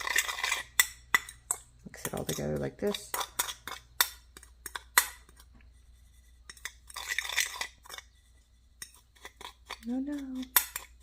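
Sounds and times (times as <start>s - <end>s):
utensil clinking against a dish: 0.0s - 5.5s.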